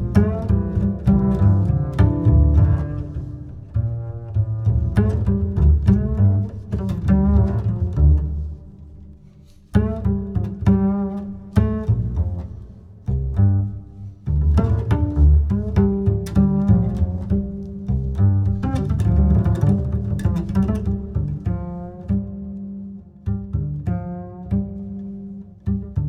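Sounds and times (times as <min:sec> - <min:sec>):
low deep string notes: 0:00.0 - 0:26.0.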